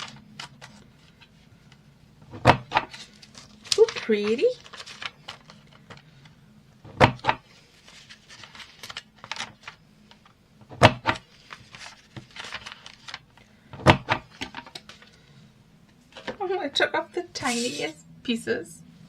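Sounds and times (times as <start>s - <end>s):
paper rustling: 0.0s - 1.4s, 2.4s - 6.4s, 7.1s - 10.3s, 11.1s - 13.4s.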